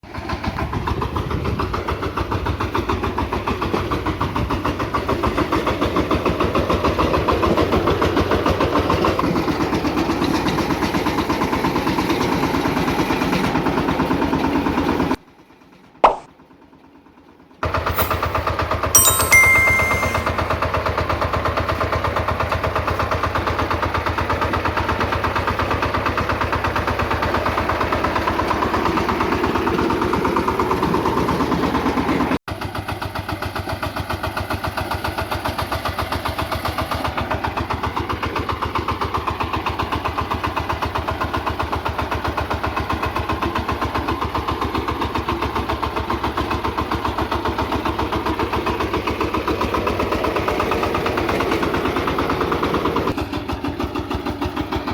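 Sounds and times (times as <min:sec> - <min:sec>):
diesel engine chugging: 0:20.8 - 0:54.9.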